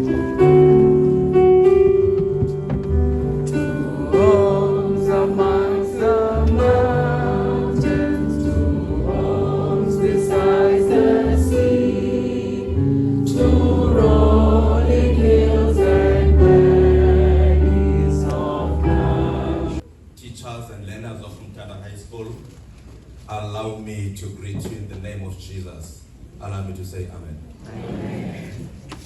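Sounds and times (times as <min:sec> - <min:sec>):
steady bass line: 0:00.0 - 0:19.8
choir singing sustained notes: 0:03.0 - 0:19.8.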